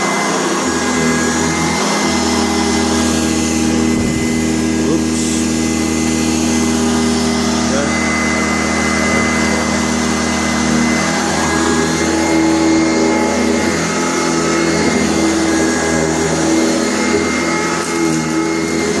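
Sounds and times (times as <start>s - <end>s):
upright vacuum cleaner running: 0.0s - 19.0s.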